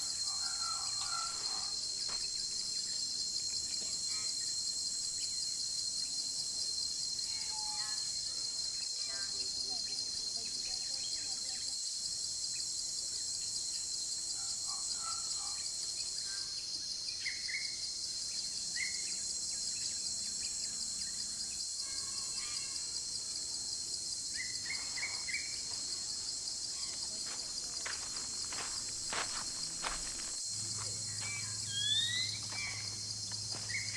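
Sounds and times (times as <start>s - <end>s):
insects buzzing: 0.0s - 33.9s.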